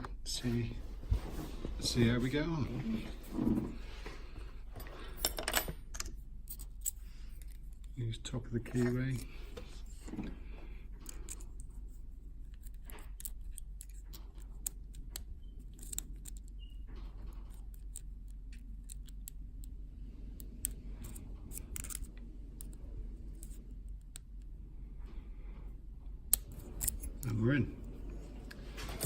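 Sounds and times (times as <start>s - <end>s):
low steady hum: 0.0s - 29.0s
lock pick clicks and scrapes: 5.4s - 8.0s, 11.0s - 11.8s, 12.4s - 19.8s, 20.4s - 24.3s, 26.3s - 27.4s.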